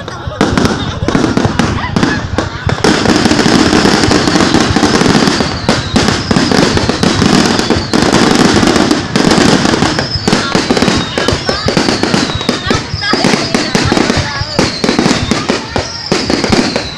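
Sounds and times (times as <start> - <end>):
fireworks bangs and crackling: 0.0 - 16.9.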